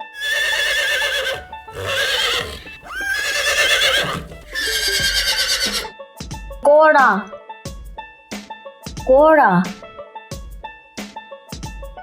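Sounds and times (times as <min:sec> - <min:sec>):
horse whinnying: 0:00.0 - 0:05.9.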